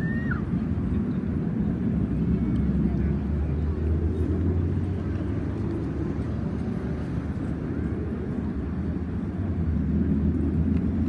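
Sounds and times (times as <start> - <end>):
aircraft engines rumbling: 0.0 - 11.0.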